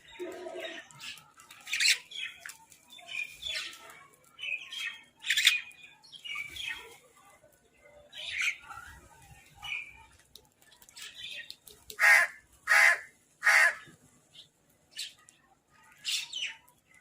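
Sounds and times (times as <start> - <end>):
birds giving harsh calls: 11.0 - 14.0.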